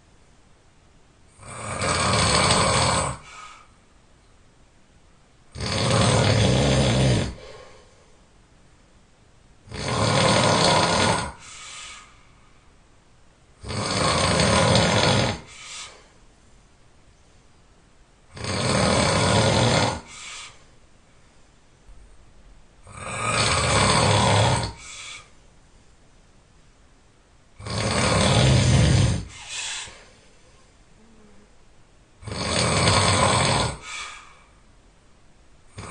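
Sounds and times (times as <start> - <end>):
person snoring loudly: 1.3 - 3.5, 5.5 - 7.6, 9.7 - 11.5, 13.6 - 15.6, 18.3 - 20.5, 22.8 - 25.3, 27.6 - 30.0, 32.2 - 34.4
soft puff of breath: 3.2 - 3.8, 11.4 - 12.4, 15.5 - 16.2, 20.1 - 20.7, 24.8 - 25.4, 29.3 - 30.3, 33.8 - 34.6.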